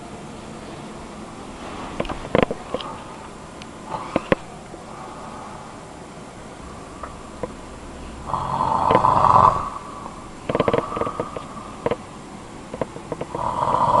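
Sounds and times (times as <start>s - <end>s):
man snoring: 3.9s - 5.7s, 8.2s - 11.9s, 13.2s - 14.0s.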